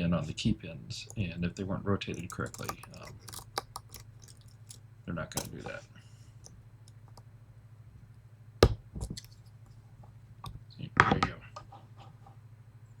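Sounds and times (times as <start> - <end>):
lock pins clicking: 2.0 - 5.8, 8.6 - 9.4.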